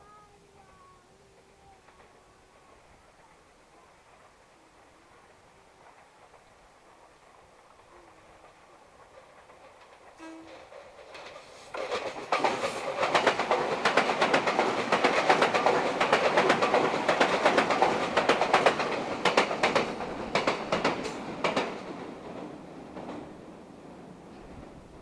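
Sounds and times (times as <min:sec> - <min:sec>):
electric train passing: 0:00.1 - 0:25.0
wheels clattering over rail joints: 0:05.8 - 0:25.0.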